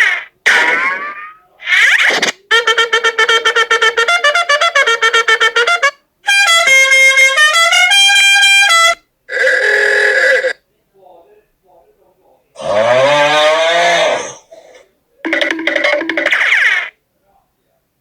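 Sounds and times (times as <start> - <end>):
brass tune of rapid notes: 2.5 - 9.0, 15.3 - 16.9.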